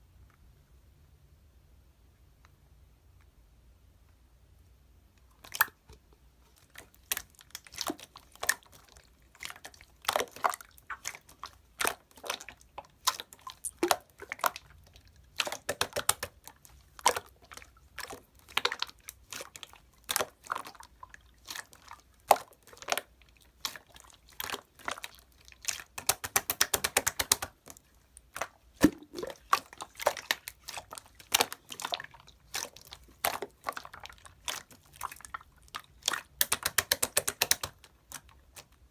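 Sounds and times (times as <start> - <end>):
slime squeezed by hand: 13.3 - 14.6, 28.3 - 38.7.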